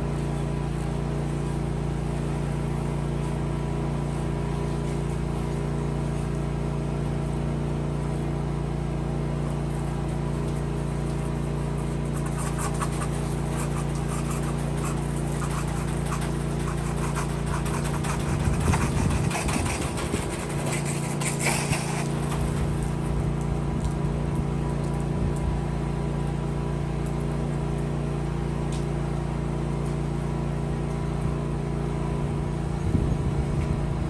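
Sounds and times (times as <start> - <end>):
pressure washer engine drone: 0.0 - 34.0
water spraying hiss: 9.7 - 23.2.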